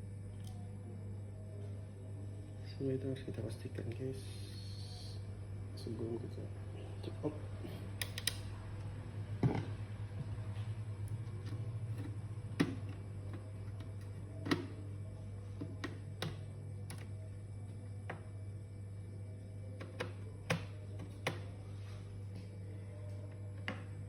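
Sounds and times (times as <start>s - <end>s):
steady low hum: 0.0s - 24.0s
clicks of small laptop parts: 8.0s - 8.4s.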